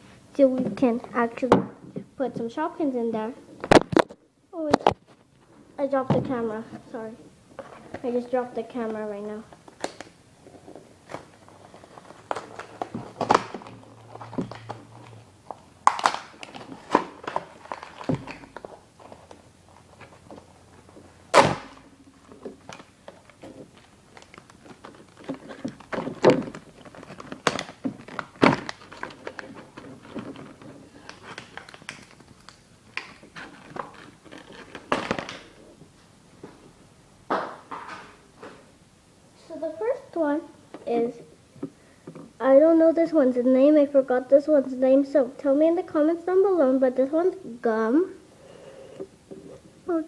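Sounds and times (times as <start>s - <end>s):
plastic packaging handled: 9.6s - 35.8s.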